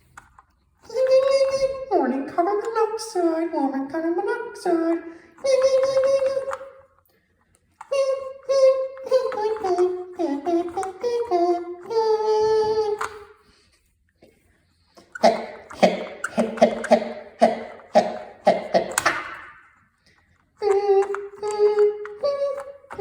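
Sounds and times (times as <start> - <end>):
person singing held notes: 0.9 - 6.7, 7.8 - 19.5, 20.6 - 23.0
beatboxing vocal beats: 7.9 - 13.3, 15.0 - 19.6, 20.6 - 23.0.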